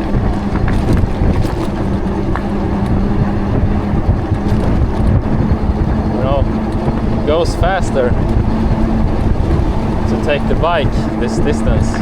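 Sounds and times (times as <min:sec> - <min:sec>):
steady low hum: 0:00.0 - 0:12.0
wind buffeting microphone: 0:00.0 - 0:12.0.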